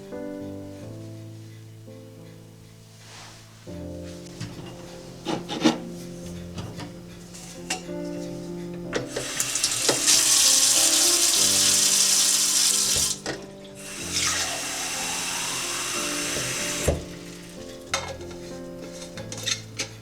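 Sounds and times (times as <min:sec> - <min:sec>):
tap water running into sink: 0:09.0 - 0:17.6.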